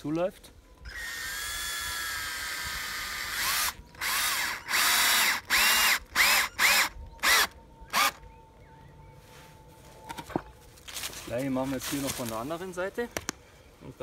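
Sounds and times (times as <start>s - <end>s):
power drill drilling into wood: 0.9s - 8.2s.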